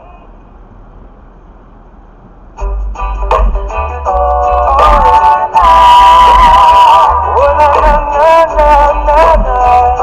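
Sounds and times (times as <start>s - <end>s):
wavering melody over bass: 2.6s - 10.0s.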